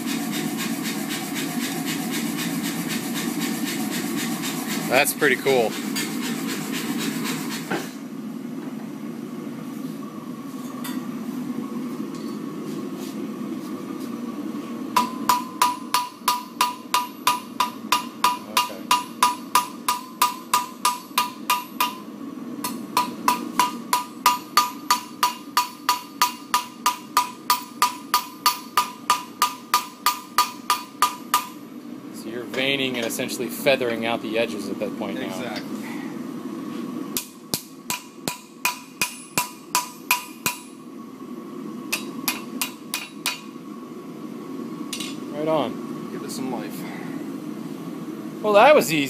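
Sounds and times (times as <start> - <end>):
hammer striking steel on anvil: 15.0 - 22.0, 22.6 - 31.6, 37.2 - 40.8, 41.9 - 43.5, 44.9 - 45.2.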